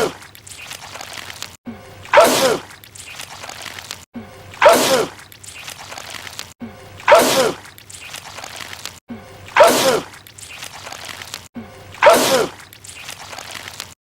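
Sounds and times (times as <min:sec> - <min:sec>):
man sneezing: 0:09.6 - 0:10.1.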